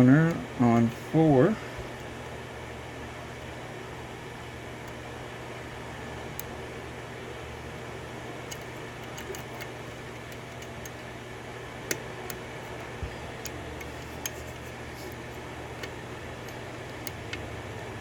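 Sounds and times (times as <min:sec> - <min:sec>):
steady hum: 0:00.0 - 0:18.0
lock pick clicking in lock: 0:08.5 - 0:11.0.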